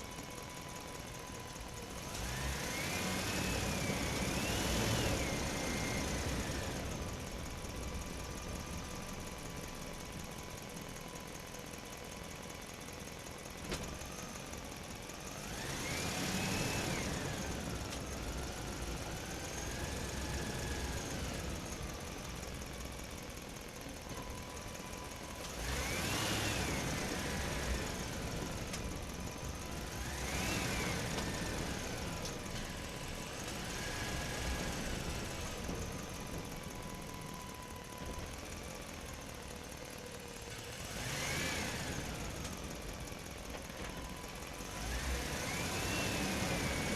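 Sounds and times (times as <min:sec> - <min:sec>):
truck engine revving: 0:02.0 - 0:07.1, 0:15.4 - 0:22.0, 0:25.5 - 0:36.1, 0:40.6 - 0:42.7, 0:44.6 - 0:46.9.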